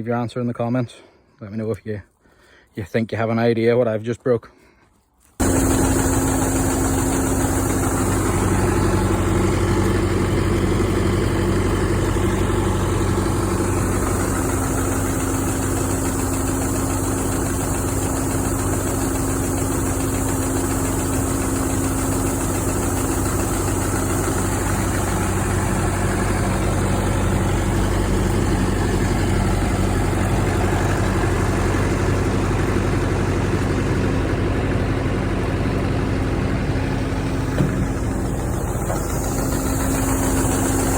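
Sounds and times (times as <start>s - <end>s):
combine harvester engine idling: 5.4s - 40.9s.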